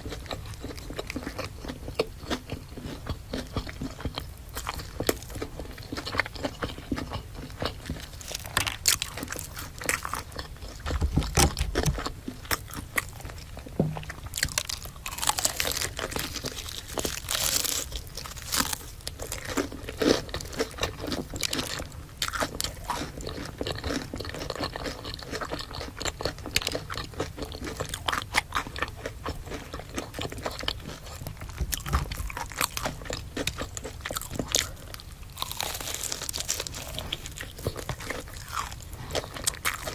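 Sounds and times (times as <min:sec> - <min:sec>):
person biting and chewing: 0:00.0 - 0:39.9.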